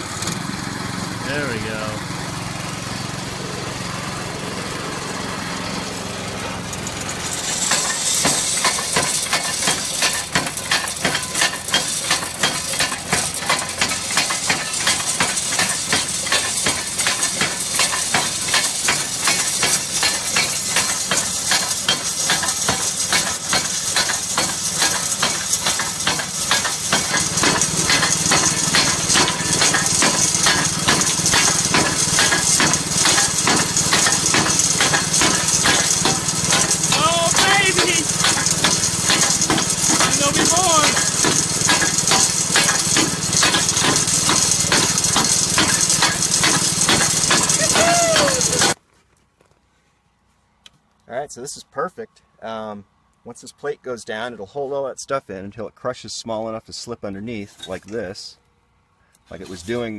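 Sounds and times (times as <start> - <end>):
engine running steadily: 0.0 - 48.8
stamps pounding ore: 7.1 - 48.8.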